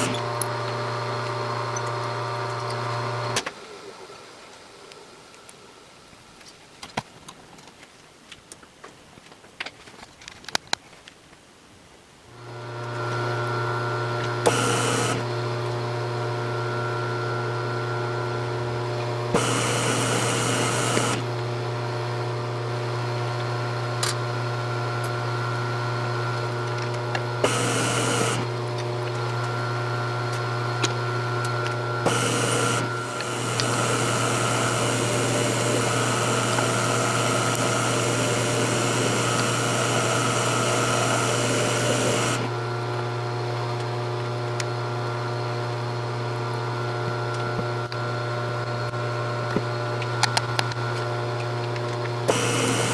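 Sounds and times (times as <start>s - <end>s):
milling machine humming: 0.0s - 3.5s, 12.4s - 48.0s, 49.4s - 52.9s
cutter hissing noise: 14.4s - 15.3s, 19.3s - 21.3s, 27.4s - 28.5s, 32.0s - 42.5s, 52.3s - 52.9s.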